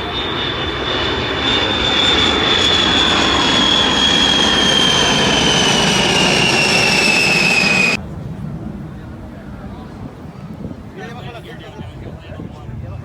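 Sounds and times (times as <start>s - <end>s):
high whine falling in pitch: 0.0s - 8.0s
aircraft engine roar: 0.0s - 10.0s.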